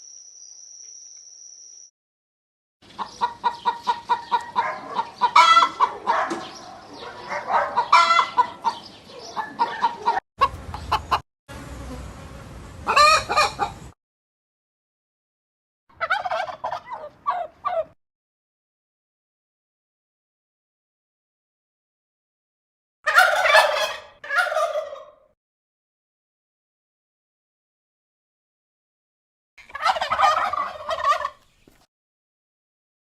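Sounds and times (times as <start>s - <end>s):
chickens clucking: 2.8s - 11.2s, 12.8s - 14.0s, 16.0s - 18.0s, 23.1s - 25.2s, 29.6s - 31.6s.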